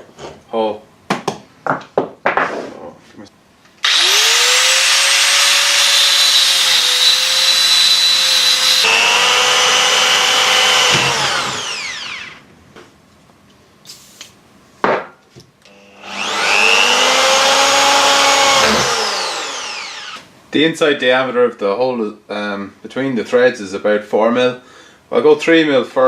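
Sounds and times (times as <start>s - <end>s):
grinder whining and grinding metal: 3.8s - 12.4s, 15.7s - 20.3s.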